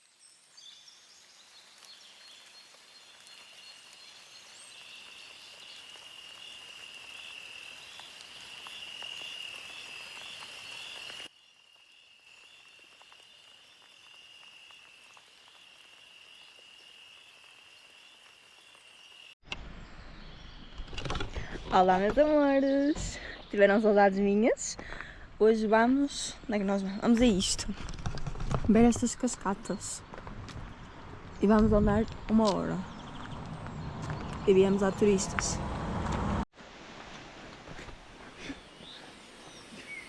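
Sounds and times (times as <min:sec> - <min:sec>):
insects chirping: 0:01.7 - 0:23.6.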